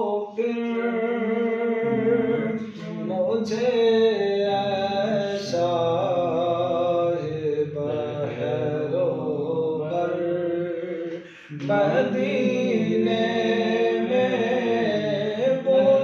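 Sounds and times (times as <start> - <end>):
man singing melismatic line: 0.0 - 16.0
singer breathing: 11.2 - 11.6.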